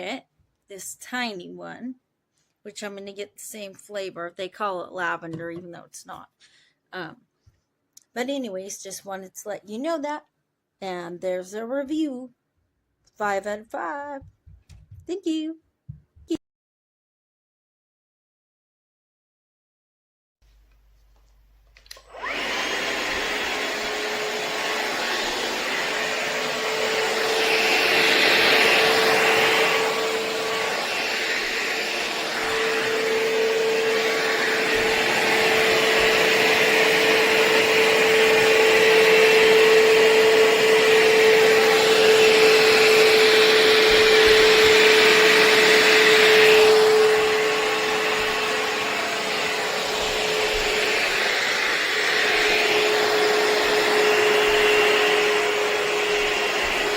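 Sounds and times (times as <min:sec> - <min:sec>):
vacuum mop motor whine: 0:21.9 - 0:56.9
rushing suction noise: 0:22.2 - 0:56.9.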